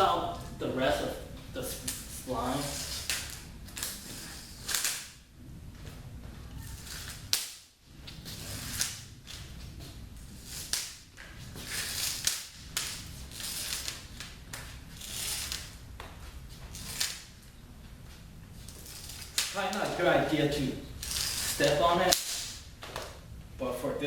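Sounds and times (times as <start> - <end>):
sharp snaps: 6.7 - 9.4, 10.5 - 11.3, 21.0 - 23.2
spline rasping out of a groove: 14.9 - 15.8, 21.0 - 22.6.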